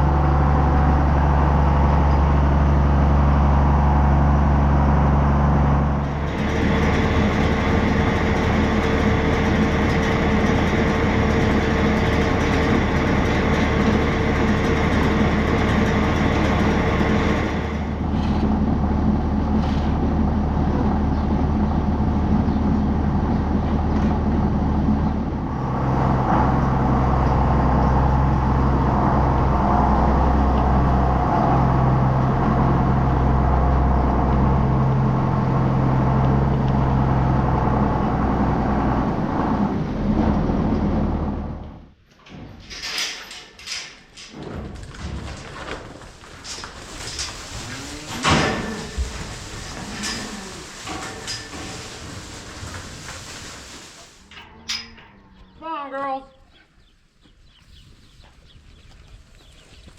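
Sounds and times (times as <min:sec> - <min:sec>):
engine running steadily: 0:00.0 - 0:41.9.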